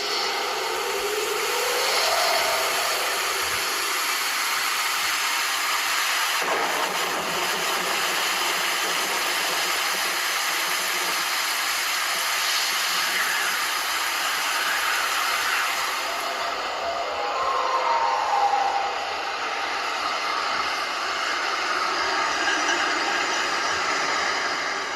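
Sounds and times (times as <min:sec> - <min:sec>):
loud rushing hiss: 0:00.0 - 0:24.9
faint gliding tones: 0:16.0 - 0:23.3.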